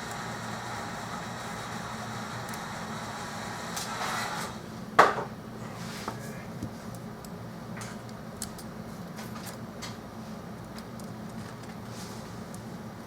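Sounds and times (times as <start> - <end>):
steady low hum: 4.5 - 13.0
small tools clicking and tapping: 6.6 - 10.0.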